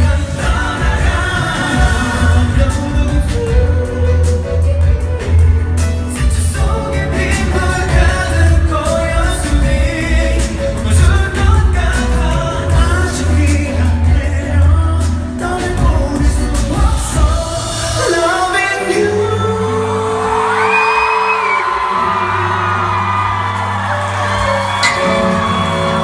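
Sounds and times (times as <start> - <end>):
live pop music with singing: 0.0 - 26.0
audience whooping and shouting: 19.9 - 26.0.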